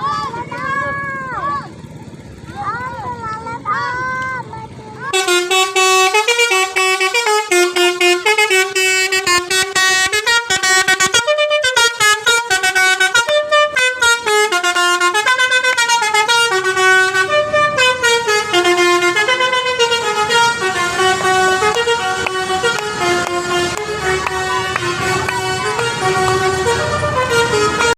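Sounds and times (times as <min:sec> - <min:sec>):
bus musical horn melody: 0:05.1 - 0:27.9.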